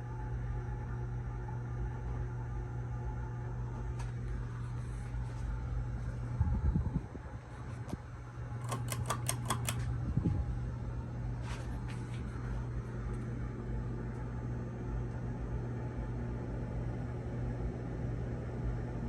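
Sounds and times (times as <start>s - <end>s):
ceiling fan motor humming: 0.0s - 17.1s
sharp clicks: 7.8s - 9.9s.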